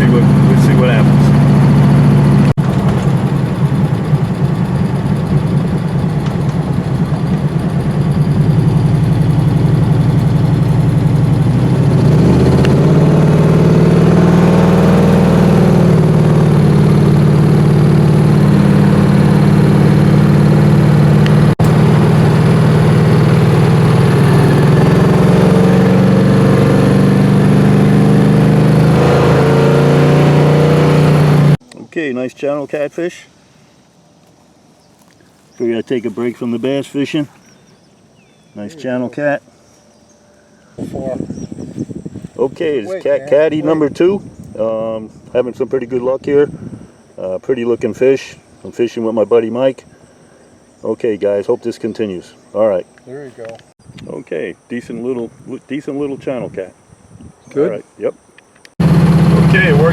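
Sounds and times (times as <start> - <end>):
vehicle engine running: 0.0 - 31.6, 58.7 - 59.9.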